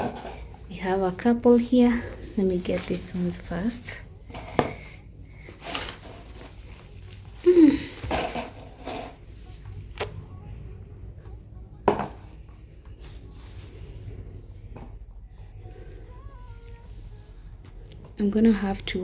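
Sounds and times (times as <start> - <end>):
fruit knocking into a basin: 11.8 - 12.2.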